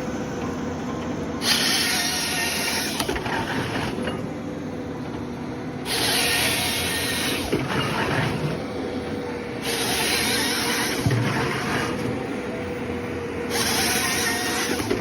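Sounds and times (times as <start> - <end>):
cutting machinery running: 0.0 - 15.0
harsh cutting noise: 5.8 - 8.6, 9.6 - 12.3, 13.5 - 15.0.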